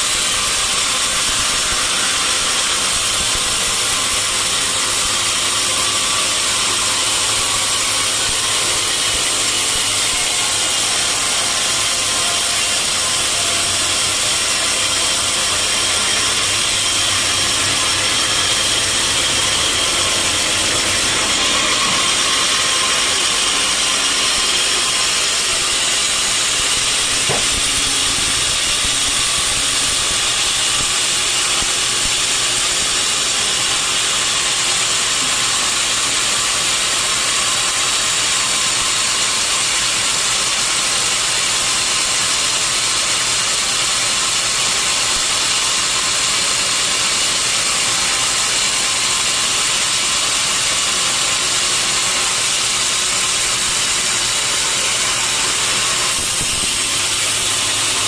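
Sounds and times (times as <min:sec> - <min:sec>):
saw blade hissing through wood: 0:00.0 - 0:35.8, 0:46.9 - 0:58.0
low motor hum: 0:25.2 - 0:30.9.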